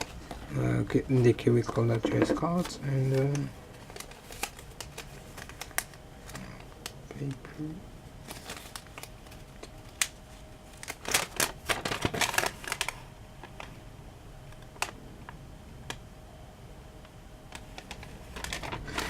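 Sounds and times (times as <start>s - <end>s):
paper packaging crinkling: 0.0s - 7.4s, 8.2s - 13.8s, 17.5s - 19.0s.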